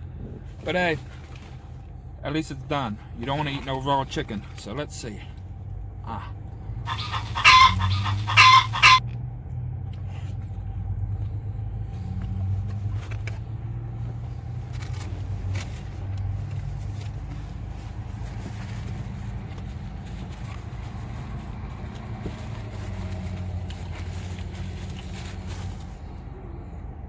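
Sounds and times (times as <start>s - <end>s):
car engine idling: 0.0s - 27.0s
chicken clucking: 6.9s - 9.0s.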